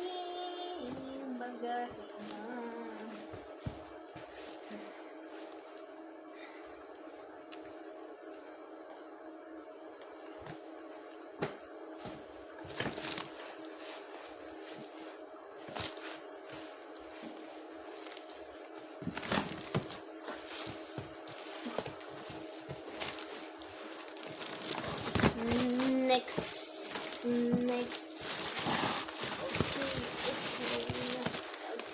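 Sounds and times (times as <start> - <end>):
steady low hum: 0.0 - 31.9
packaging rustling and crinkling: 12.6 - 31.9.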